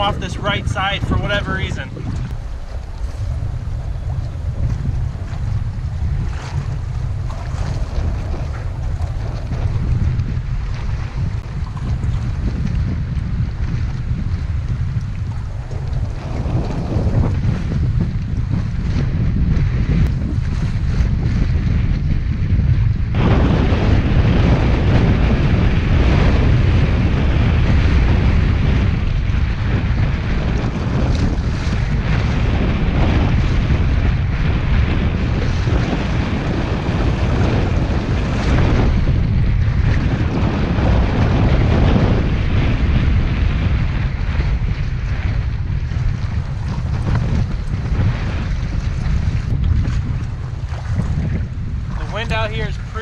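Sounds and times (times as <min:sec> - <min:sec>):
person speaking: 0:00.0 - 0:02.0, 0:52.0 - 0:53.0
wind buffeting microphone: 0:00.0 - 0:53.0.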